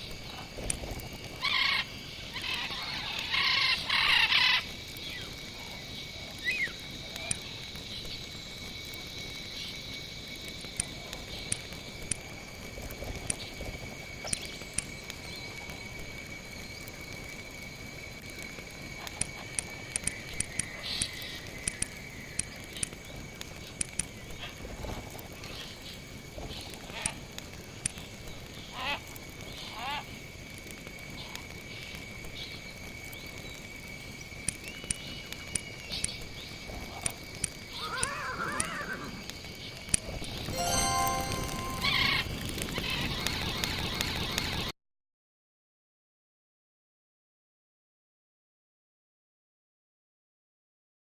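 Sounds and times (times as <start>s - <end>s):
insects droning: 0.0s - 44.7s
faint clicks: 10.4s - 13.6s, 14.2s - 15.8s, 18.3s - 25.6s, 26.4s - 29.6s, 34.4s - 38.1s.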